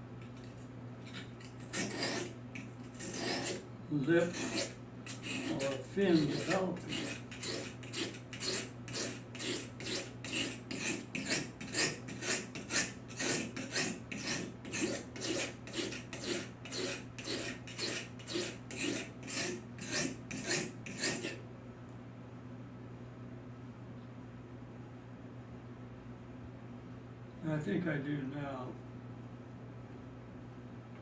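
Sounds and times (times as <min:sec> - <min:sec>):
knife scraping on sharpening stone: 0:01.1 - 0:03.6, 0:04.2 - 0:21.4.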